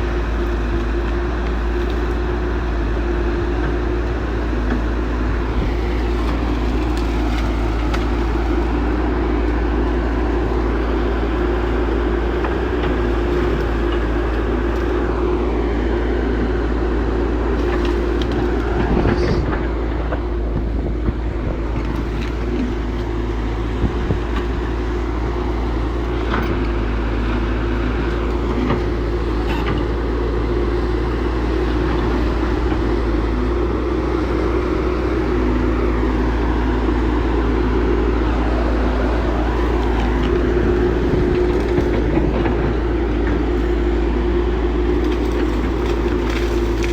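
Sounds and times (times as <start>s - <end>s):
diesel machinery rumbling: 0.0s - 46.9s.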